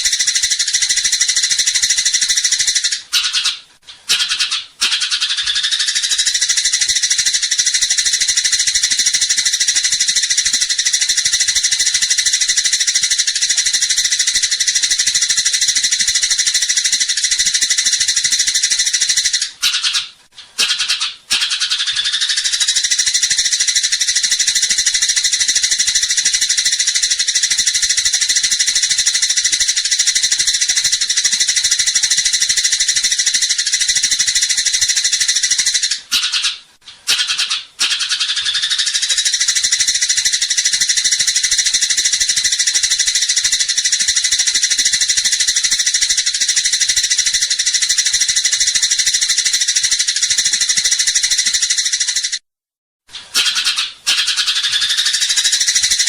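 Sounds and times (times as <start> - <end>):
sparrows chattering: 0.0 - 52.4, 53.2 - 56.0.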